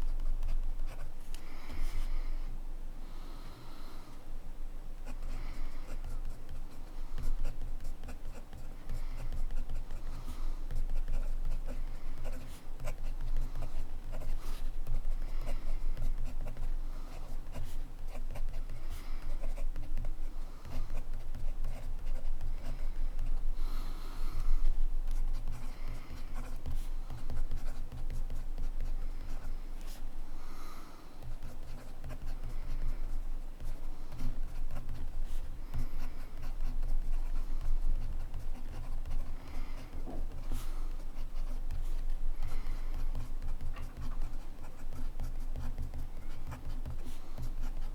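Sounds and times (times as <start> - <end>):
pen nib scratching on paper: 6.0 - 23.3, 31.2 - 47.9.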